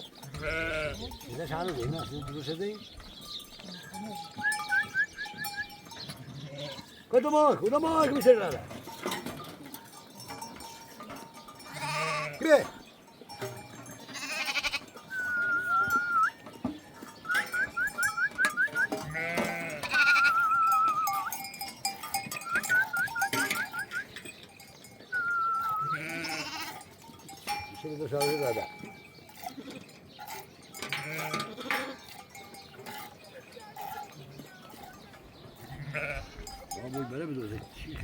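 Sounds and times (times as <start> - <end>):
sheep and goats bleating: 0.1 - 38.0
high wavering whistle: 15.1 - 16.4, 17.3 - 18.9, 20.0 - 21.3, 25.1 - 26.0.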